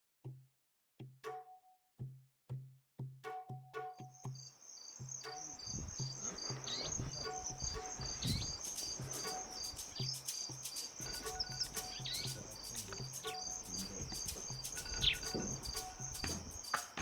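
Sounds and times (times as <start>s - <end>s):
insects chirping: 4.1s - 17.0s
soft drum beat: 5.0s - 17.0s
short bird calls: 5.2s - 16.8s.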